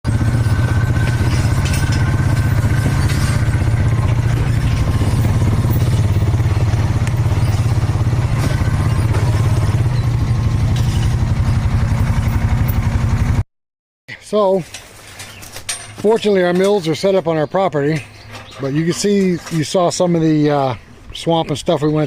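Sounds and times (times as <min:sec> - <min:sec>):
engine running steadily: 0:00.0 - 0:13.4
light clattering: 0:00.2 - 0:12.9, 0:14.6 - 0:17.2, 0:17.8 - 0:20.2.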